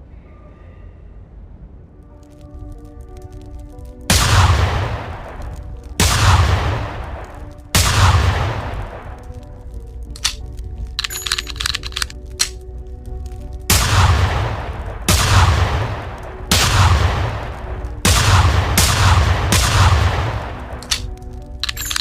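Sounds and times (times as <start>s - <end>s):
loud revolver shots echoing: 4.1s - 9.1s, 13.7s - 22.0s
light metallic clicks: 10.1s - 12.6s, 20.8s - 22.0s.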